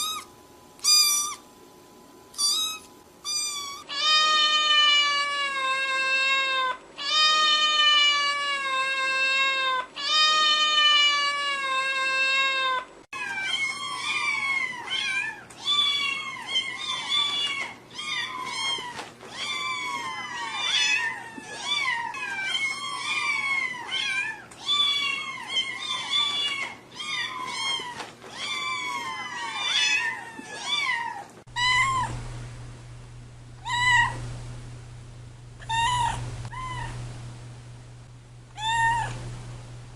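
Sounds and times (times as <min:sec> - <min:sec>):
cats meowing: 0:00.0 - 0:01.4, 0:02.4 - 0:32.1, 0:33.6 - 0:34.2, 0:35.6 - 0:37.0, 0:38.6 - 0:39.2
low steady hum: 0:00.0 - 0:07.0, 0:30.1 - 0:39.9.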